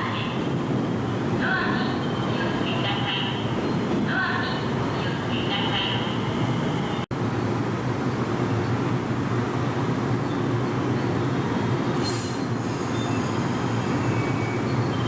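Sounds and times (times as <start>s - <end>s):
train rail rumble and hum: 0.0s - 15.0s
high-pitched wheel squeal: 12.0s - 15.0s.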